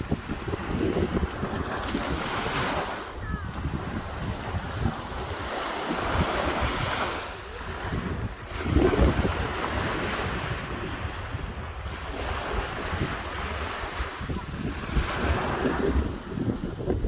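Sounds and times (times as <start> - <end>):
sea waves breaking on a beach: 0.0 - 17.0
wind buffeting microphone: 0.0 - 17.0.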